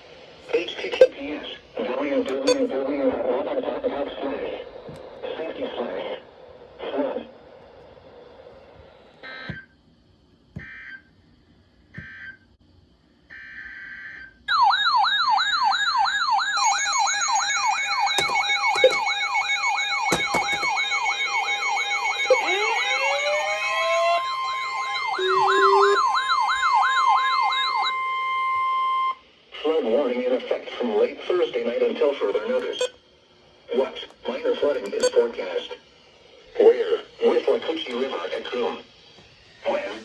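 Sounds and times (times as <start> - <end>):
steady alert tones: 2.3 - 2.8, 16.5 - 28.0
wailing and yelping sirens: 13.4 - 29.2
buzzy digital header bursts: 24.6 - 26.2.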